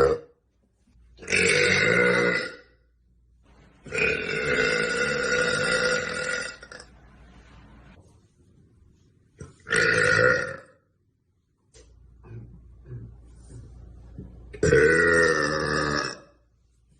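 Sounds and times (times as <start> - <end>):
woman burping: 1.2 - 2.7, 3.9 - 6.9, 9.7 - 10.8, 14.6 - 16.3.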